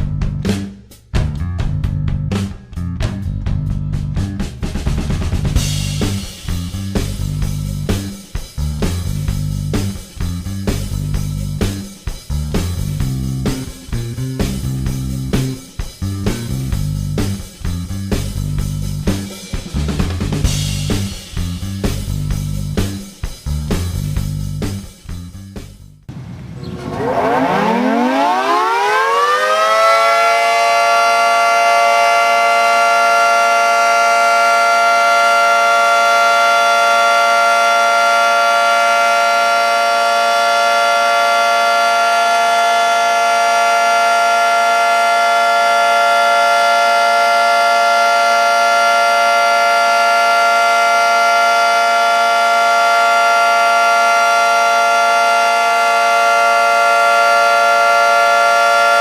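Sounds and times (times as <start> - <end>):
two-tone warning siren wailing: 26.3 - 59.0.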